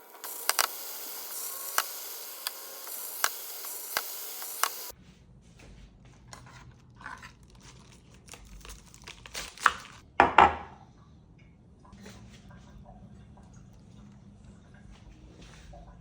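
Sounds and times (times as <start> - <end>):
crinkling and rustling: 5.5 - 10.0.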